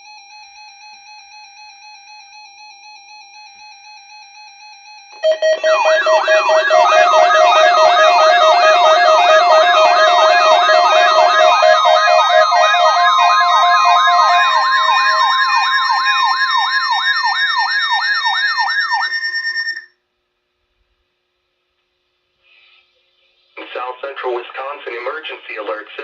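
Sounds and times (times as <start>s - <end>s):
electronic alert signal sweeping: 5.2s - 19.9s.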